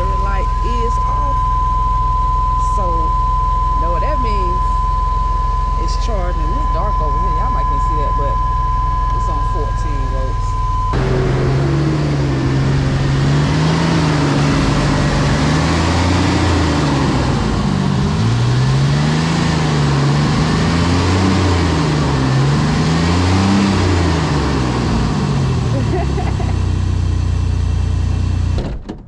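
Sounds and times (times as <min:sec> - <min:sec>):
van engine idling unevenly: 0:10.9 - 0:21.3.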